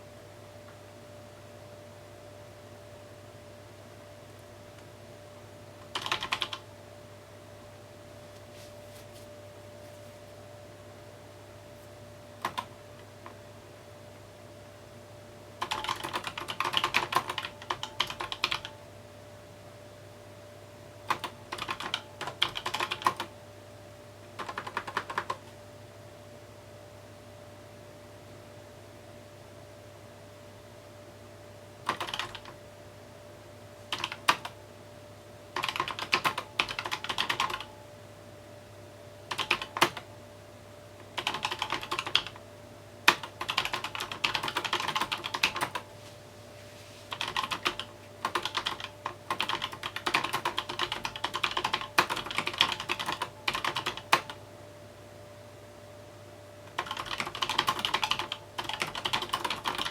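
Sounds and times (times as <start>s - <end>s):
typing on mechanical keyboard: 5.9s - 6.6s, 12.4s - 12.7s, 15.6s - 18.8s, 21.1s - 23.3s, 24.4s - 25.4s, 31.9s - 32.6s, 33.9s - 34.6s, 35.6s - 37.7s, 39.3s - 40.1s, 41.2s - 42.4s, 43.1s - 45.8s, 47.1s - 54.4s, 56.7s - 59.9s.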